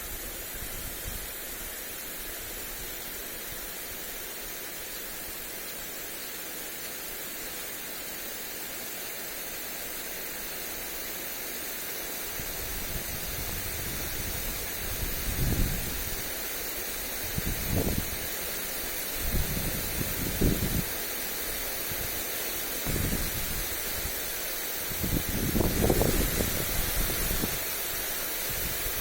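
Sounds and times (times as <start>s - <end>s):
lawn sprinkler spraying water: 0.0s - 29.0s
wind gusts buffeting microphone: 12.4s - 16.3s, 17.2s - 18.3s, 19.1s - 20.9s, 22.8s - 27.7s.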